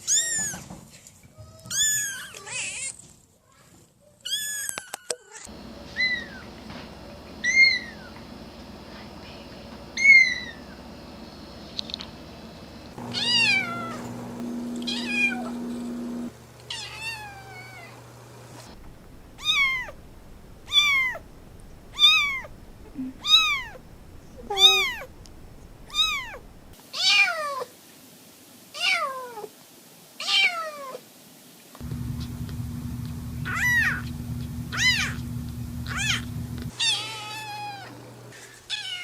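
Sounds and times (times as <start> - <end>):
kittens meowing: 18.8 - 26.8, 34.7 - 35.3, 35.9 - 37.9.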